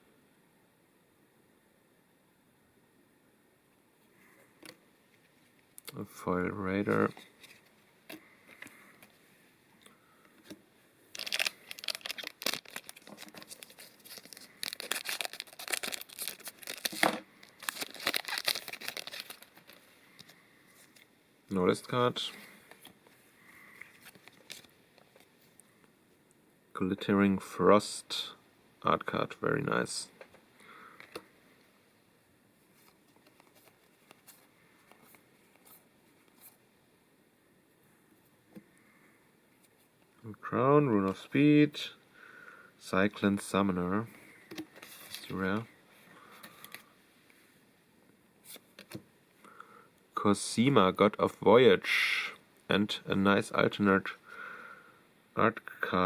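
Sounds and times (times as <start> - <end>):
trading cards rustling and clicking: 10.4 - 21.1, 23.8 - 25.3, 32.8 - 36.6, 44.5 - 45.7
foil wrapper tearing and crinkling: 11.1 - 19.8, 24.0 - 24.7.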